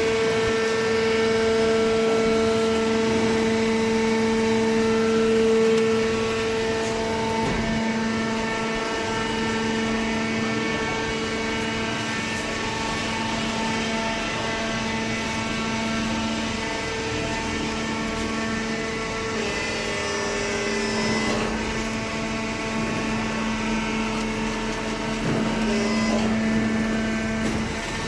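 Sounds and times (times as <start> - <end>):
hydraulic baler drone: 0.0 - 28.0.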